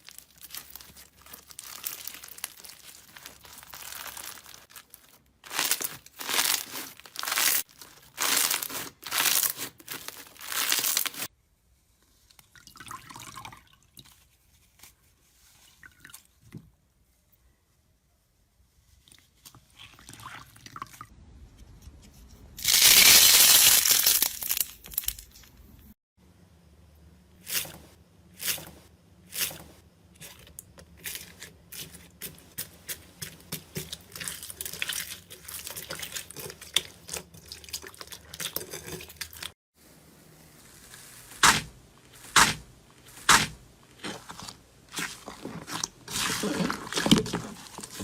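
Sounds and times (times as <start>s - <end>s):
wet slime rush: 5.4s - 11.3s, 40.8s - 48.0s.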